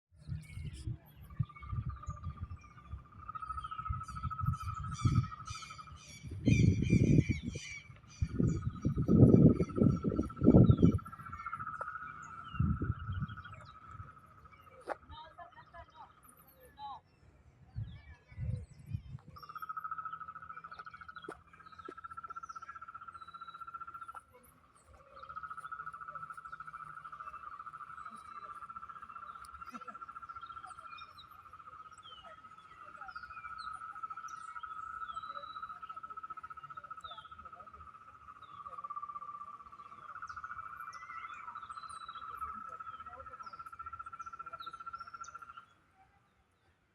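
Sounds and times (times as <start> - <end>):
wind rumble on microphone: 0.1 - 15.2, 17.4 - 20.0
birds chirping: 0.2 - 46.9
frog trilling: 1.4 - 7.4, 8.2 - 15.0, 19.4 - 45.7.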